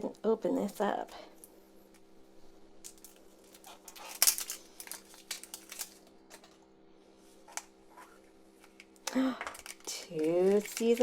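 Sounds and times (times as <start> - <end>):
faint steady hum: 0.0 - 11.0
toy packaging clicks and rustles: 2.8 - 6.6, 8.7 - 11.0.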